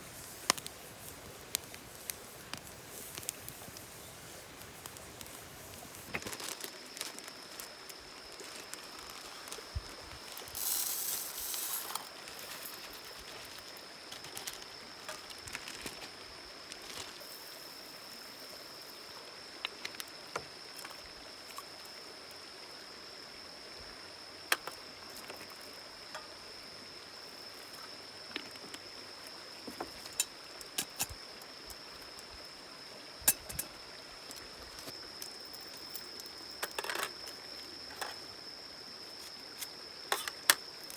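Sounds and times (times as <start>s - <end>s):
high-pitched insect-like tone: 10.3s - 15.3s.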